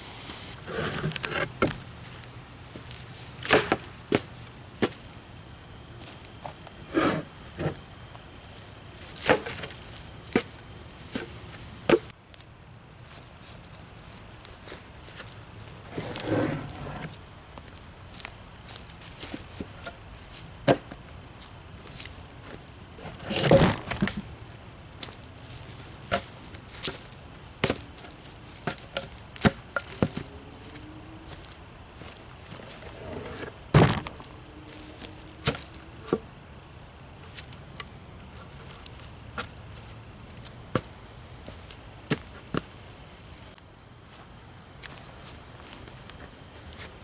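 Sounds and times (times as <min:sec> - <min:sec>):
high-pitched insect buzz: 0:11.5 - 0:43.6.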